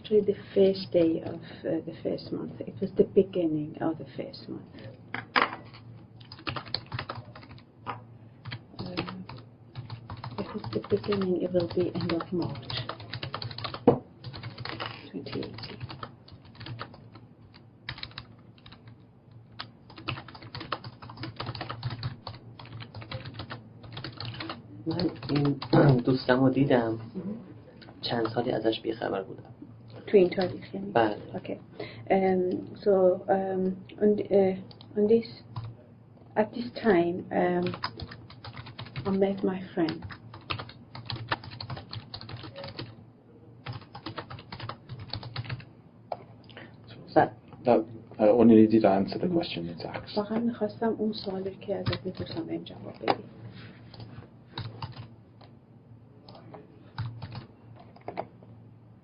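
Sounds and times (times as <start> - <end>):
computer keyboard typing: 5.7 - 7.6, 8.4 - 26.2, 30.2 - 30.6, 37.6 - 42.9, 43.6 - 45.7, 51.2 - 53.2, 53.9 - 55.5, 57.0 - 58.3.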